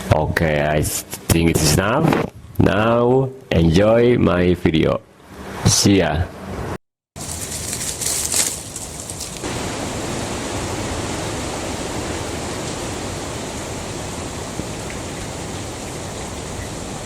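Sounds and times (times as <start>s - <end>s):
steady rushing noise: 6.6s - 17.0s.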